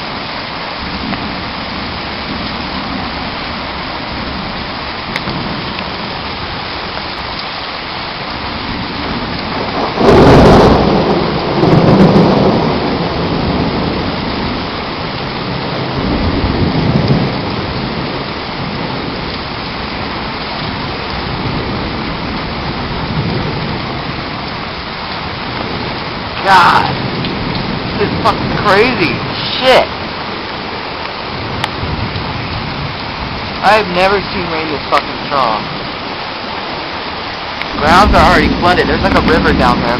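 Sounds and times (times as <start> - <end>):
heavy rain pouring: 0.0 - 39.9
rolling thunder rumbles: 0.0 - 39.9
loud thunder clap: 8.8 - 19.3, 37.6 - 39.9.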